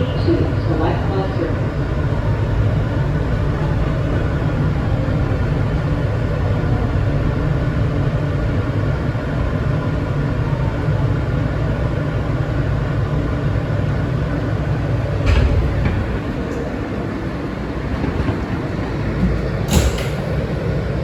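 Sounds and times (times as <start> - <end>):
subway train rumbling: 0.0 - 21.0
short knock: 19.1 - 20.4.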